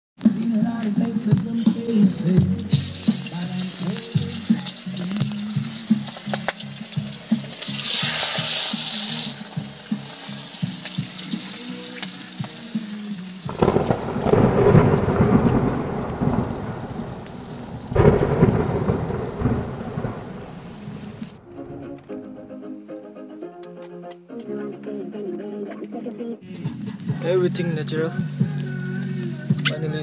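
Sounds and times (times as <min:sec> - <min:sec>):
music with low pulsing beat: 0:13.5 - 0:22.0
thunder rolling: 0:13.5 - 0:22.1.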